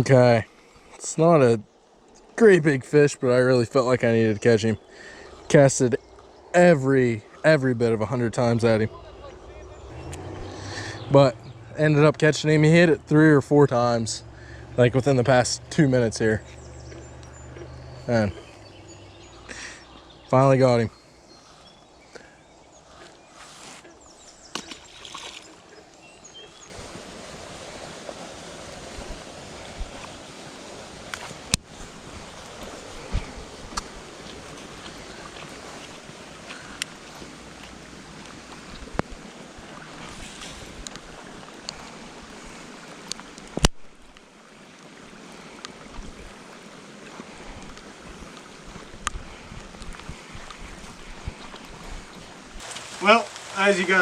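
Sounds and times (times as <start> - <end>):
falling rain hiss: 0.0 - 24.0, 25.8 - 54.0
sharp drip ticks: 13.7 - 19.6, 33.7 - 39.2
bird chirps: 14.2 - 26.7.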